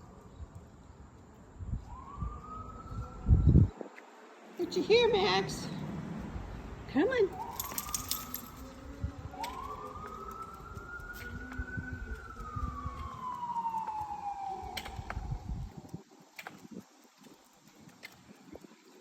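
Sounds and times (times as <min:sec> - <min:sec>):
low road rumble: 0:00.0 - 0:18.6
emergency siren wailing: 0:01.6 - 0:03.7, 0:07.2 - 0:08.5, 0:09.2 - 0:15.9.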